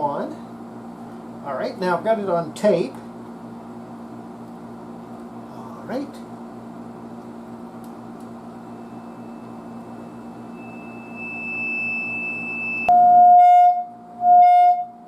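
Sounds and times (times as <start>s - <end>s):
low steady hum: 0.0s - 15.0s
test tone through speaker: 8.8s - 15.0s.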